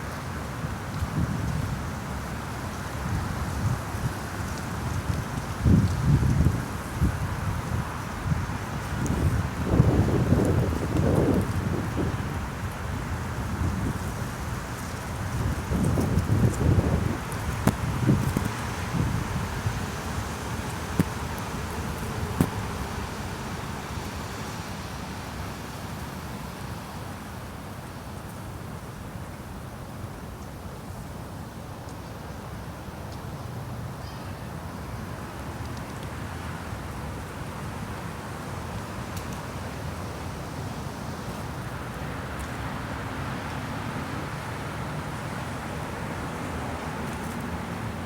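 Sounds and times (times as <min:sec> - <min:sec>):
strong wind on microphone: 0:04.9 - 0:24.4.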